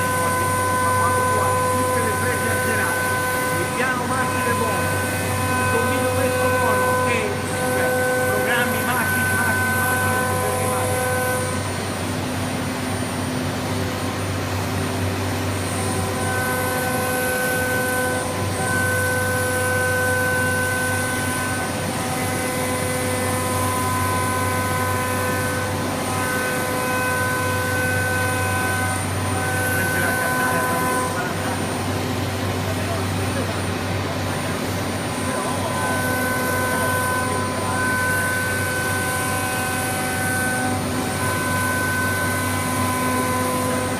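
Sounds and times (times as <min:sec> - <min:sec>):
high whine: 0:00.0 - 0:43.9
router machine din: 0:00.0 - 0:43.9.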